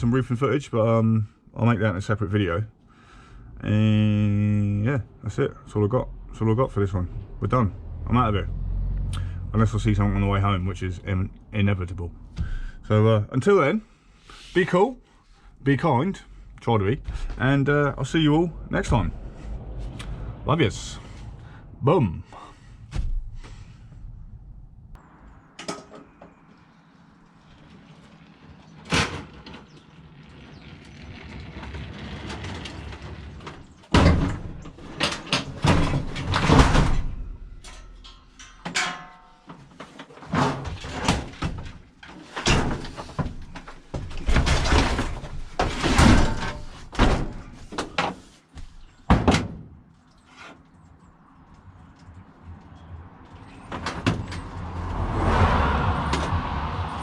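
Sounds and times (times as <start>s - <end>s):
metal banging and clattering in van: 12.2s - 12.9s, 16.2s - 19.6s, 22.3s - 24.6s, 28.7s - 30.6s, 31.2s - 50.7s, 52.7s - 55.1s.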